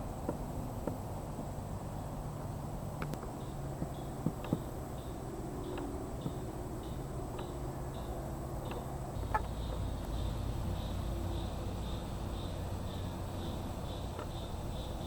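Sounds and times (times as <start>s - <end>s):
faint high chirp: 3.4s - 15.0s.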